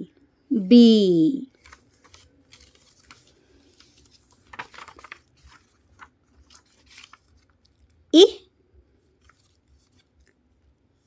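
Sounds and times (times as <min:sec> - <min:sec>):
paper rustling and crinkling: 0:01.5 - 0:08.0, 0:09.0 - 0:10.8.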